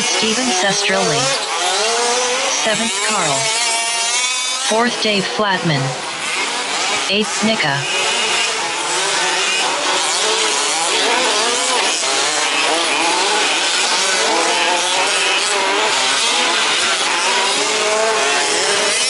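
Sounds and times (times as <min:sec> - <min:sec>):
rc truck engines buzzing: 0:00.0 - 0:19.0.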